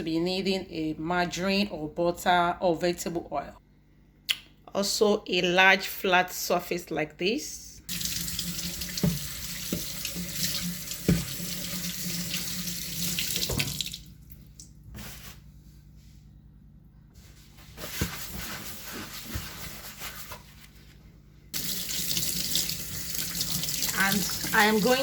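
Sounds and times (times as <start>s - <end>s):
tap water running into sink: 7.9s - 14.1s, 21.6s - 25.0s.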